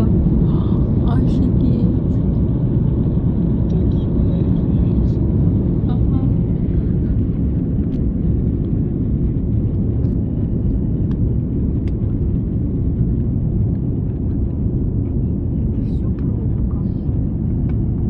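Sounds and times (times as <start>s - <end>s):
jet airliner cabin drone: 0.0s - 18.0s.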